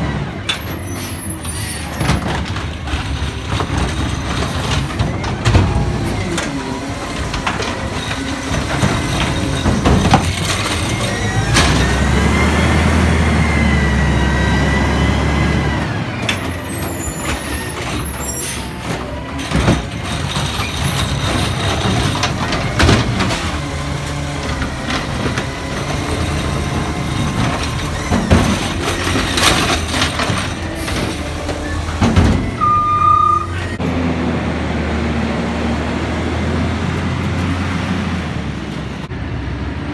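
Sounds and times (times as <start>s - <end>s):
garbage truck engine: 0.0s - 39.9s
knocks and clanks: 0.4s - 13.6s, 15.8s - 33.8s
whining tone: 24.4s - 33.8s
short beep: 32.6s - 33.8s.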